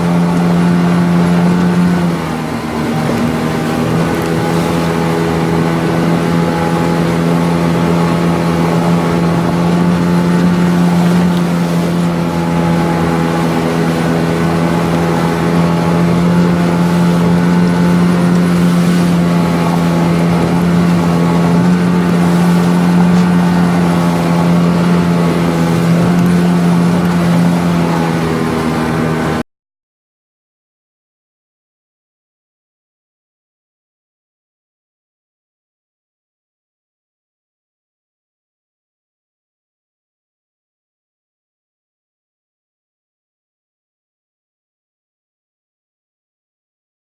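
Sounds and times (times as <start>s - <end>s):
outboard motor running: 0.0s - 29.4s.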